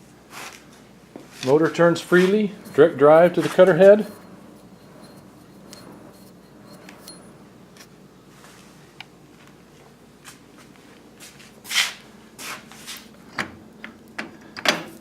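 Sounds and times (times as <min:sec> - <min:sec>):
rubs and knocks: 0:01.4 - 0:07.4
loud scrape on machine: 0:02.1 - 0:07.5.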